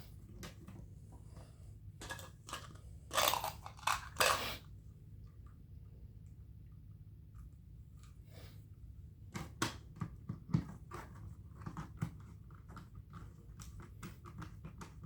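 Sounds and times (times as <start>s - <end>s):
plastic parts clicking and knocking: 2.0s - 4.4s.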